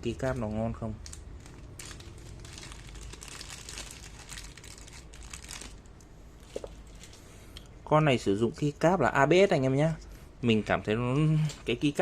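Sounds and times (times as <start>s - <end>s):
crinkling plastic packaging: 0.2s - 7.2s.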